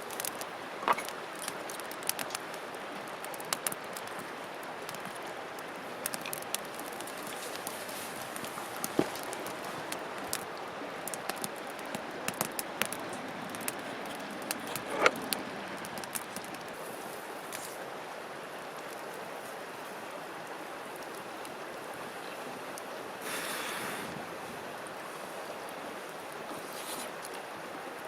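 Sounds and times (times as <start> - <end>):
wood fire crackling and popping: 0.0 - 17.8.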